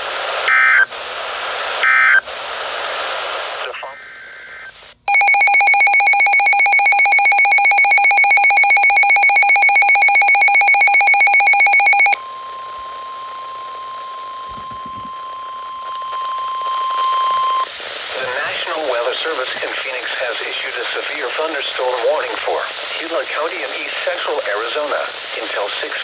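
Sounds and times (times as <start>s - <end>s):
electronic alarm beeping rapidly: 5.1s - 12.2s.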